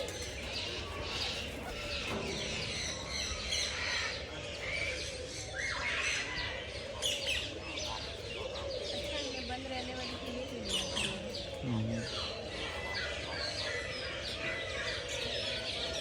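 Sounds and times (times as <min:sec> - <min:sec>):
birds chirping and calling: 0:00.0 - 0:16.0.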